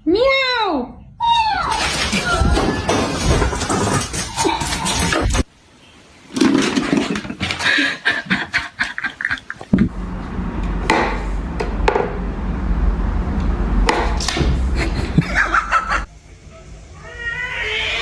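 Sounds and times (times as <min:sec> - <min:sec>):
steady low hum: 0:09.7 - 0:18.0.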